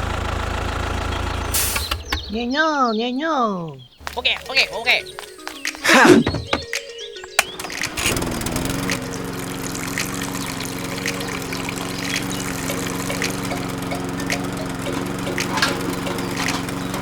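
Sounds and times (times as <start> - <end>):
small electric motor humming: 7.5 - 17.0.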